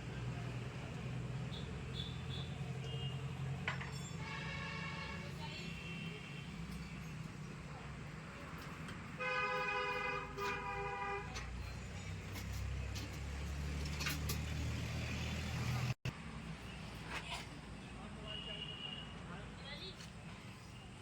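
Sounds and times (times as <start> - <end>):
vehicle horn: 1.5 - 3.3, 4.1 - 6.5, 9.2 - 11.5.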